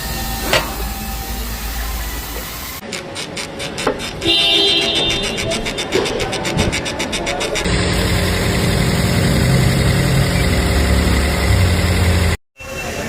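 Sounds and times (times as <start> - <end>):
fast even ticking: 2.8 - 12.4
car engine running: 7.6 - 12.4.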